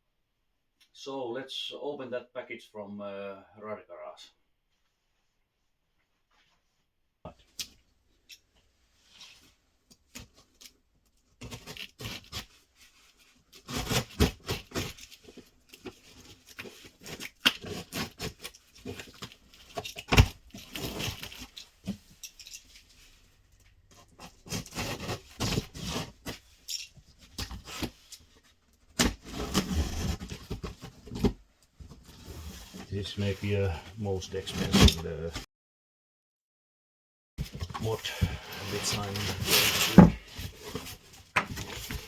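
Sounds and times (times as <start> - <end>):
packaging scraping and rustling: 11.4 - 23.2, 23.9 - 35.4, 37.4 - 42.0.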